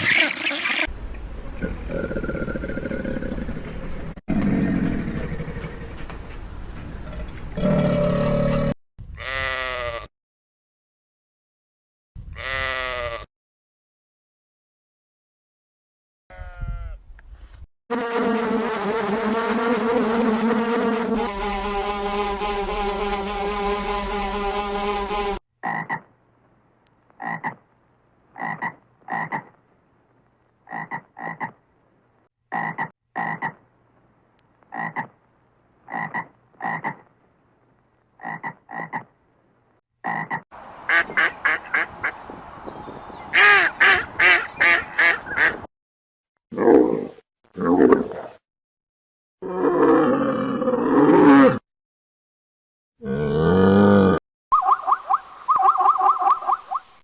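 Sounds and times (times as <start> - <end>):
fast run of sharp calls: 40.8 - 45.6.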